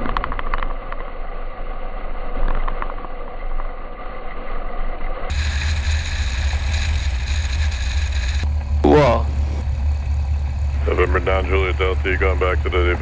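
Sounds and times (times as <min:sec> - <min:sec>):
light airplane engine drone: 0:05.3 - 0:13.0.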